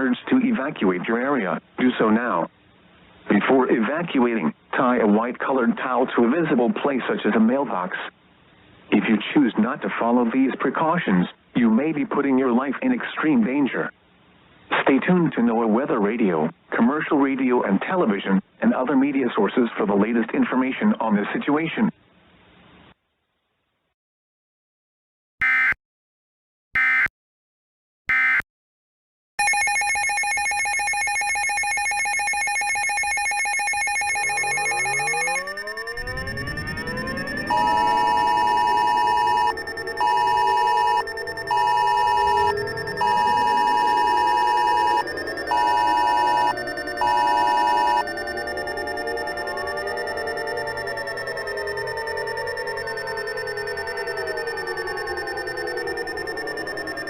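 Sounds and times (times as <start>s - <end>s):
data bursts: 29.4s - 57.0s
electronic drone of tones: 29.4s - 57.0s
loud ringing beep: 29.4s - 57.0s.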